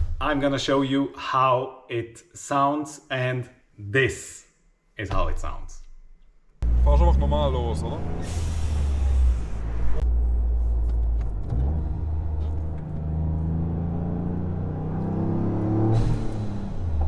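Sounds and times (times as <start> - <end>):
car engine pulling away: 6.6 - 17.0
blow-off valve hissing whoosh: 8.2 - 10.0.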